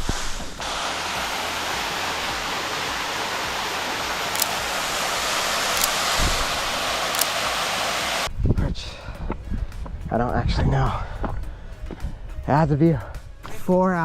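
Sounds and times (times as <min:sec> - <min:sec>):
waterfall rushing: 0:00.0 - 0:08.3.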